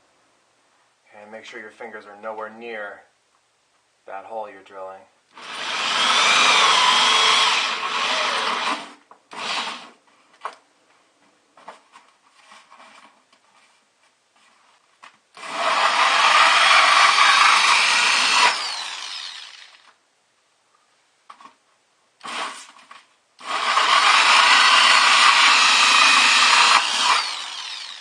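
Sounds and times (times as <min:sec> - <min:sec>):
power drill cutting styrofoam: 0:05.3 - 0:09.9, 0:15.4 - 0:20.0, 0:22.2 - 0:22.8, 0:23.4 - 0:28.0.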